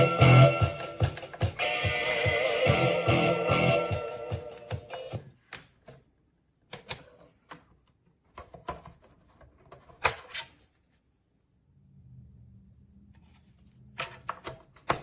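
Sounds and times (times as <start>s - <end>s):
plastic speaker clicks and knocks: 14.0s - 15.0s.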